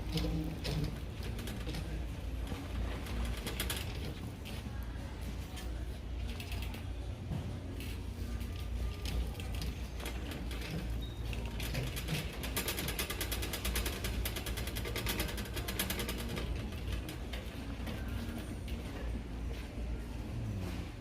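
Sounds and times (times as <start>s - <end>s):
rapid mechanical clicking rattle: 0.0s - 4.3s, 9.0s - 18.1s.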